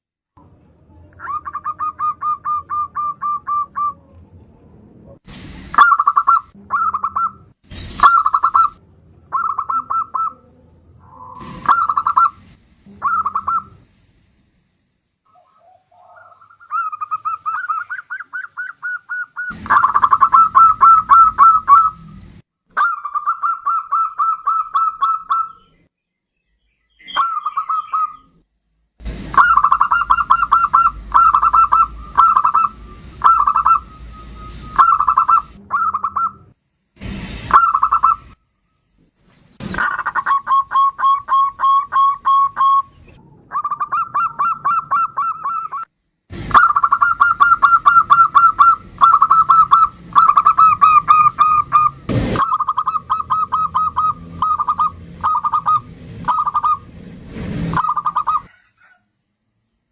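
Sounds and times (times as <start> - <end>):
dove cooing: 8.0 - 12.4, 13.0 - 13.8, 15.3 - 22.0, 29.4 - 33.9, 34.7 - 36.4, 39.8 - 45.9, 46.5 - 56.8, 57.8 - 59.0.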